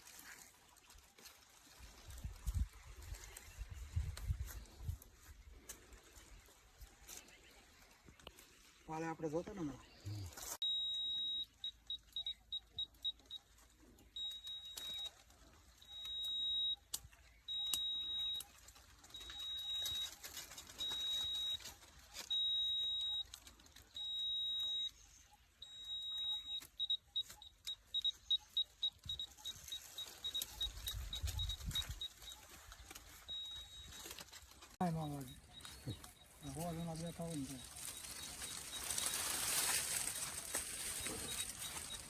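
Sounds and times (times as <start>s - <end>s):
electronic beeper beeping: 34.8s - 42.0s.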